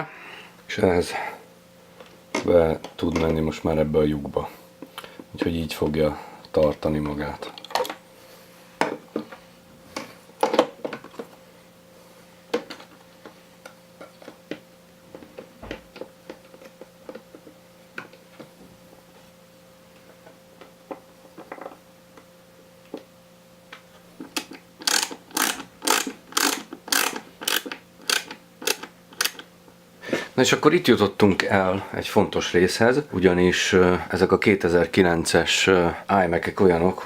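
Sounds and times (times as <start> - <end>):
faint steady hum: 0.0 - 37.0
metal parts clicking and tapping: 24.3 - 29.5
screwdriver sharp clicks: 24.8 - 29.4.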